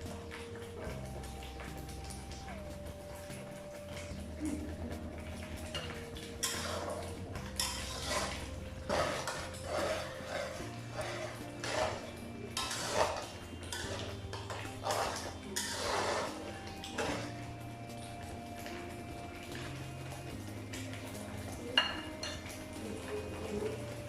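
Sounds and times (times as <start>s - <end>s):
paste frying in oil: 0.0s - 24.0s
spatula scraping in a pan: 5.6s - 19.8s.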